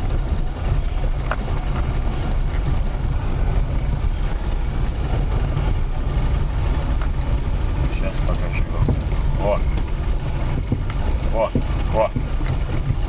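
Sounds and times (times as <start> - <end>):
car rumbling while moving: 0.0 - 13.0
dull knocking from suspension: 4.5 - 13.0.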